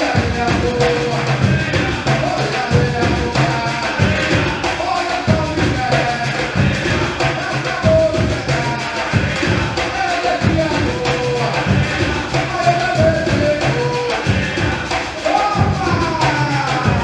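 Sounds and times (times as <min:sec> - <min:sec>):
percussion ensemble playing: 0:00.0 - 0:17.0
singing: 0:00.0 - 0:17.0.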